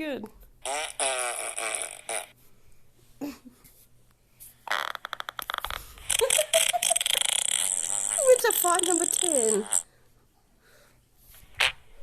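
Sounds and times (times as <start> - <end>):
buzzy fart sound effect: 0.6 - 2.4, 4.6 - 9.9, 11.6 - 12.0.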